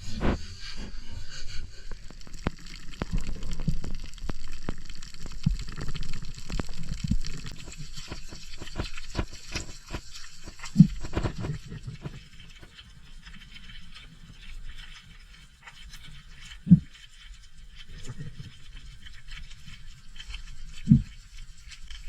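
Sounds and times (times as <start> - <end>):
sea water sloshing and bubbling: 0.0 - 22.0
sharp clicks and knocks: 5.4 - 12.2.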